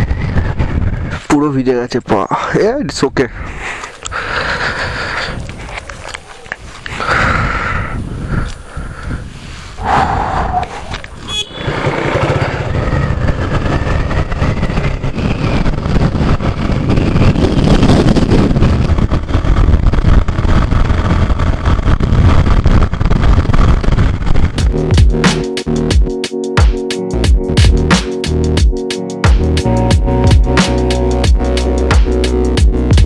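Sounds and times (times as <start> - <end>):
wind rushing: 0.0 - 1.4, 3.3 - 33.0
motorcycle engine rumble: 10.5 - 26.0
car horn toots: 11.2 - 11.8.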